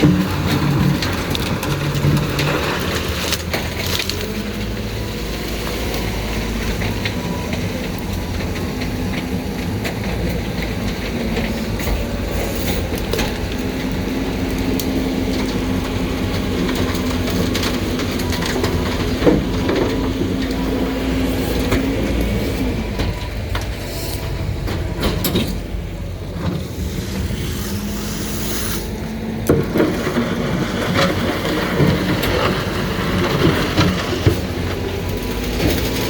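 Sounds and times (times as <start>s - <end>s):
truck engine running: 0.0s - 36.0s
wood cracking and splintering: 0.0s - 36.0s
steady hydraulic tone: 26.2s - 29.5s.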